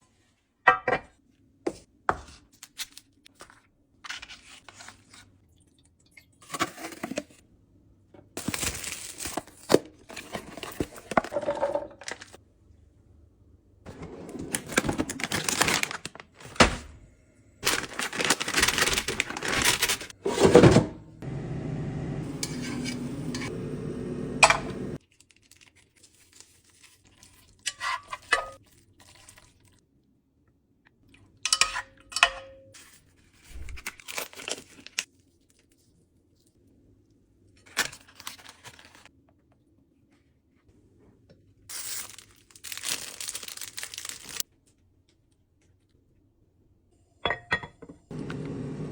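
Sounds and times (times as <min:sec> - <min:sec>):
packaging tearing and crinkling: 0:14.5 - 0:16.6, 0:17.6 - 0:20.2, 0:33.5 - 0:35.1, 0:41.7 - 0:44.4
steady hum: 0:21.0 - 0:25.0
dishes and utensils clinking: 0:22.3 - 0:23.8, 0:24.4 - 0:25.0, 0:47.2 - 0:48.0.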